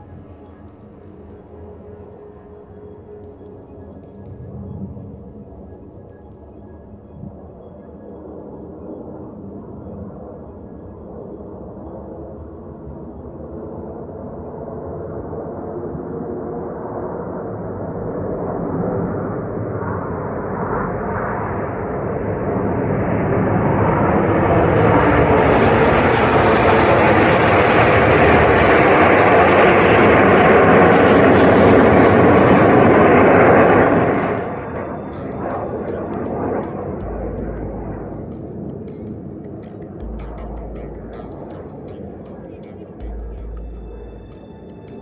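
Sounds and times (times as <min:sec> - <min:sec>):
jet engines roaring: 0:21.3 - 0:37.0.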